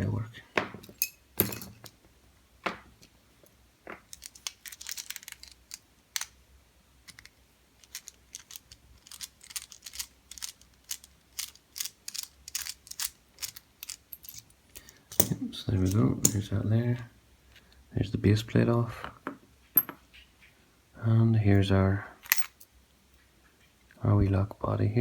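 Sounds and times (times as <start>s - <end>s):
lock-picking tools clicking: 4.0s - 6.4s, 7.1s - 16.4s, 22.2s - 22.6s.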